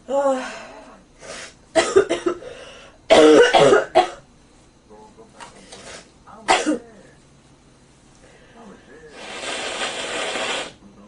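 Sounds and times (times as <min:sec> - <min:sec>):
person coughing: 0:01.8 - 0:02.4, 0:03.1 - 0:04.2, 0:06.5 - 0:06.8.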